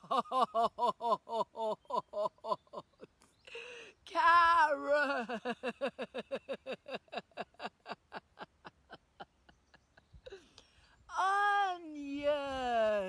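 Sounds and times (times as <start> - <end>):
woman laughing: 0.0 - 3.8, 4.6 - 10.5.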